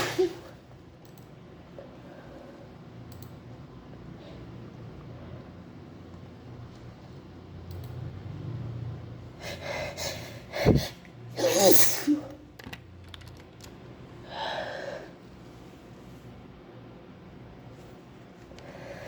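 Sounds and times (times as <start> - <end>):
woman sneezing: 0.0 - 0.6, 11.4 - 12.4.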